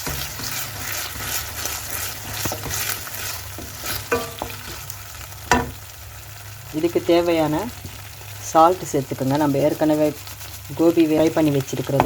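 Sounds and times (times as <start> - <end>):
spatula scraping through food: 0.0 - 5.0
vegetables sizzling in a pan: 0.0 - 12.0
knocks against pan: 5.5 - 5.8.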